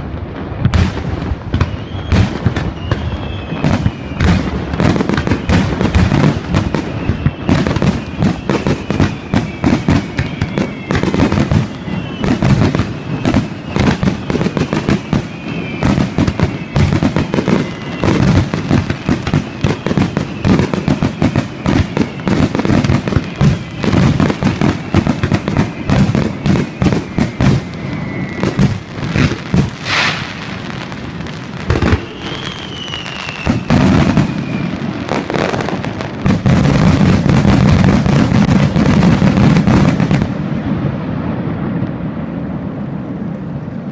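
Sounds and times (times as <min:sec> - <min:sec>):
fireworks bursts and booms: 0:00.0 - 0:43.9
high whistling sliding down: 0:01.5 - 0:35.8.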